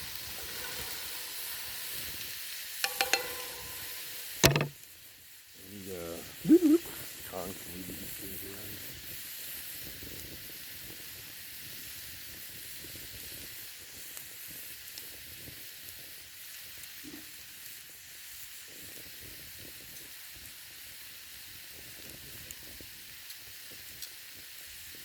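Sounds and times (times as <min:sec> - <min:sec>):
food sizzling over coals: 0:00.0 - 0:25.0
faint pops: 0:02.8 - 0:04.8.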